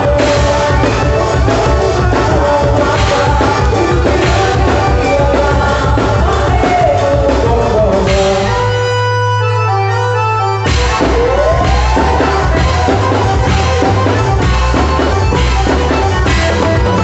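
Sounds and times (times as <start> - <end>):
person singing: 0.0 - 9.1, 10.8 - 17.0
loud dance music with beat: 10.7 - 17.0.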